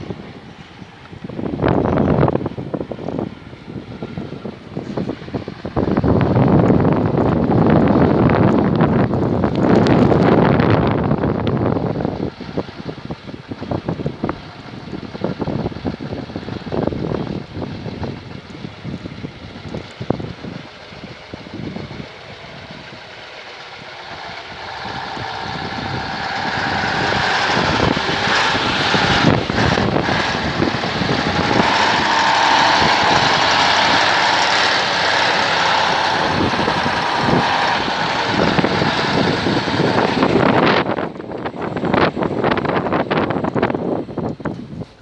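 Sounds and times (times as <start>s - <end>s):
diesel truck engine running: 0.0s - 45.0s
wind noise: 0.0s - 45.0s.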